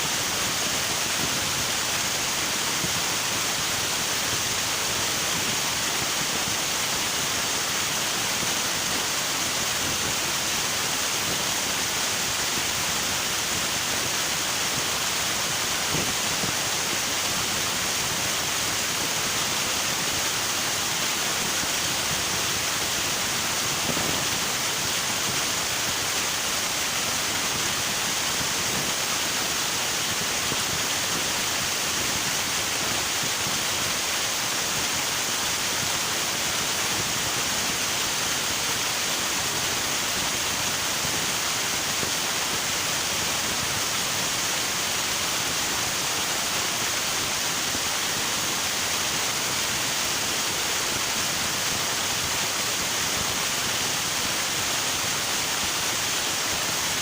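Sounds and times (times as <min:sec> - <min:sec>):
river water flowing: 0:00.0 - 0:57.0.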